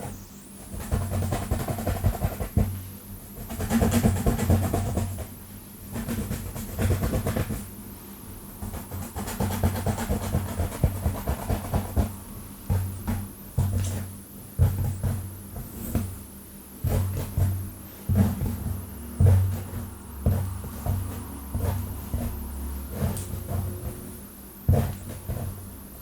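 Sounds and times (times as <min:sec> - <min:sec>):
fingernails scratching hair and scalp: 0:18.2 - 0:25.7.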